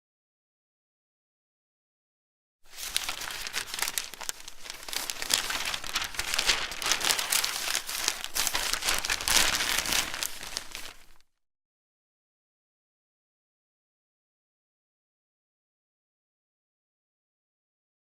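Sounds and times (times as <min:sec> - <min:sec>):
newspaper pages rustling: 0:02.7 - 0:11.2.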